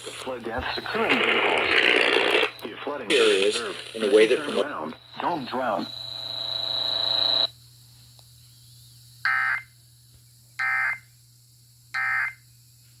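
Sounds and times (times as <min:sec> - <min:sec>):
digital data tone bursts: 0:01.4 - 0:07.5.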